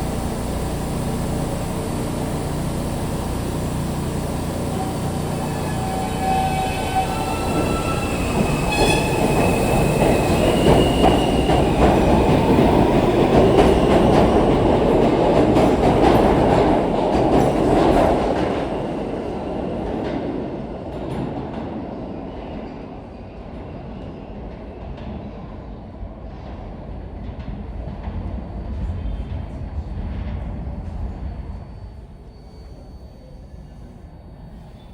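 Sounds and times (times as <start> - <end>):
subway train wheels rumbling: 0.0 - 34.9
high wheel squeal: 0.2 - 14.1.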